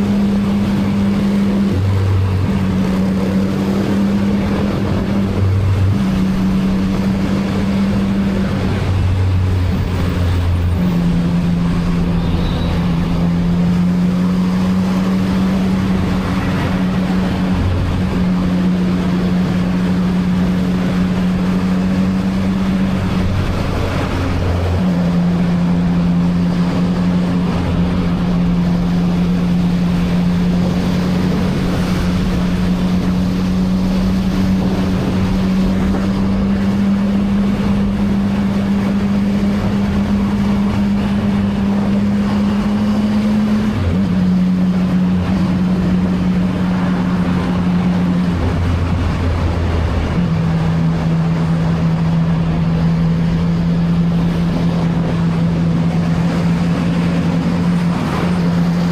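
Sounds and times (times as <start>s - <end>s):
wind and road rush: 0.0s - 58.9s.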